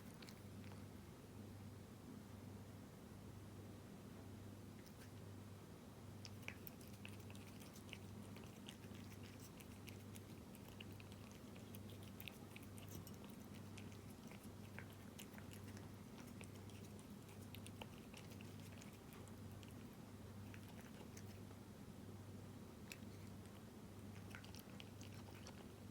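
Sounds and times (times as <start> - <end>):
cat chewing wet food: 0.0 - 0.9, 6.1 - 21.6, 22.7 - 25.9.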